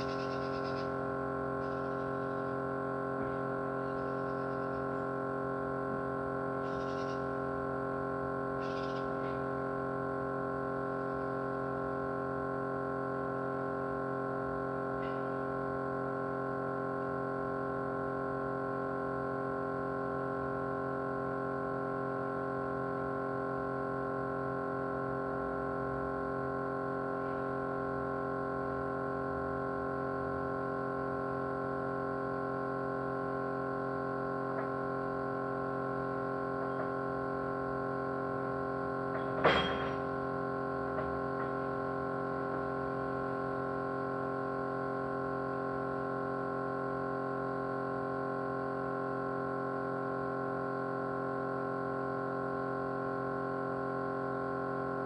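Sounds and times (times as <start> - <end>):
small electric motor humming: 0.0 - 25.5.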